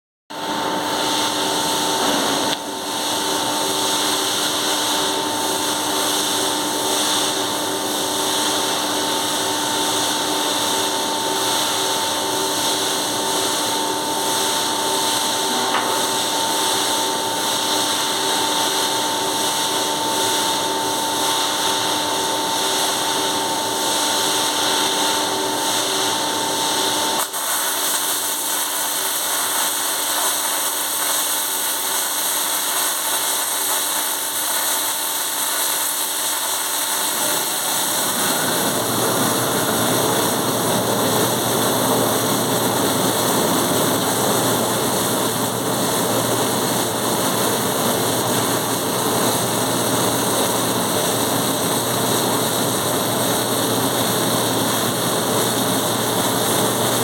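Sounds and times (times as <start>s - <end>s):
motor-driven machine whine and rush: 37.0s - 40.9s.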